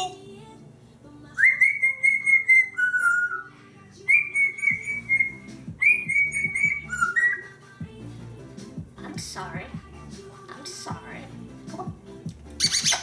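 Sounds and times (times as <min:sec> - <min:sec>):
parrot whistling: 0:01.4 - 0:03.5, 0:04.1 - 0:07.6, 0:12.6 - 0:13.0.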